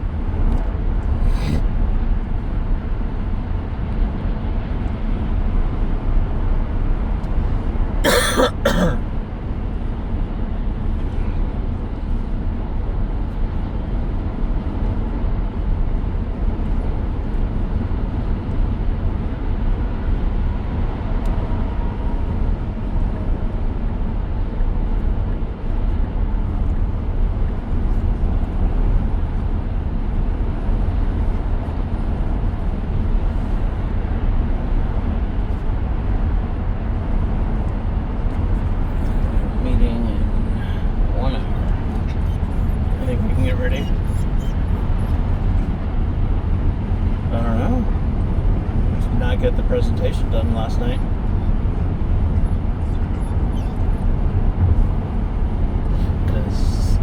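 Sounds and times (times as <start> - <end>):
road and tyre rumble in car: 0.0 - 57.0
cough-like sound: 8.0 - 9.0.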